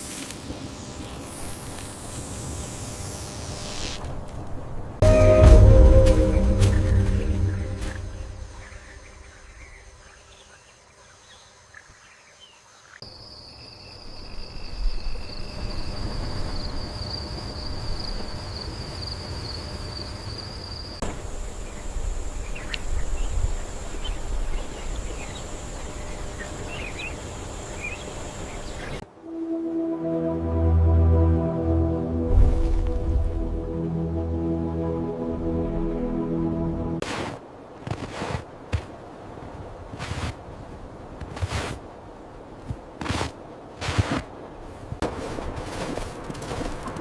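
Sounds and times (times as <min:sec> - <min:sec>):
lower insect tone: 0:00.1 - 0:04.0, 0:06.0 - 0:29.8
low rumble of ambience: 0:00.4 - 0:10.3, 0:29.8 - 0:37.0
bird chirps: 0:06.6 - 0:11.5.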